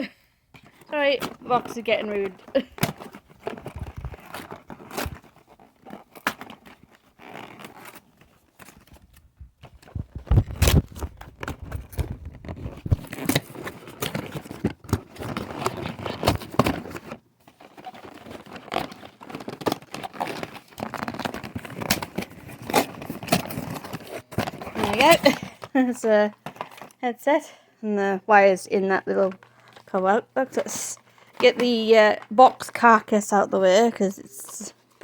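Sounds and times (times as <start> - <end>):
packaging crinkling and scraping: 0.6 - 27.0, 29.1 - 35.0
cardboard tearing: 1.1 - 25.6.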